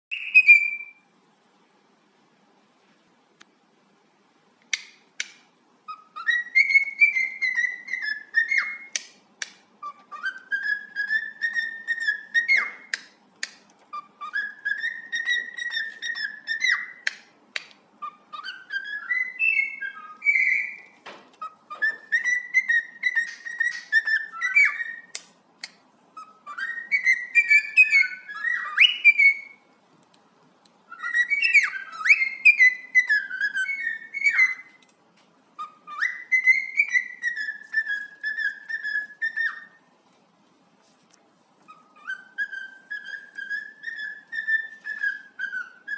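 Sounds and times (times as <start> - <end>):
cockatiel whistling: 0.1 - 1.0, 5.8 - 9.0, 9.8 - 13.2, 13.9 - 17.2, 18.0 - 25.3, 26.2 - 29.7, 30.9 - 34.8, 35.6 - 39.8, 41.6 - 45.9.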